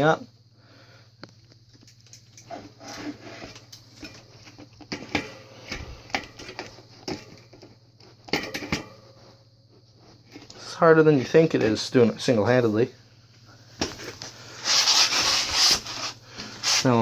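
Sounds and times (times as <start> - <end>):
bike parts clattering: 1.7 - 9.1, 13.8 - 16.0.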